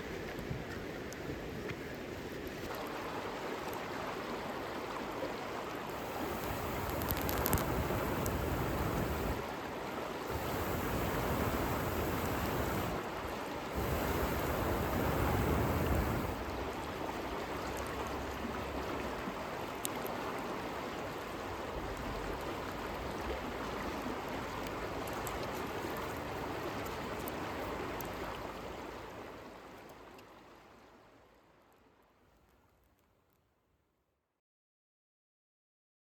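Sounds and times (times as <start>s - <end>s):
river rushing: 2.7s - 21.7s
campfire crackles: 5.7s - 9.6s, 10.2s - 28.6s.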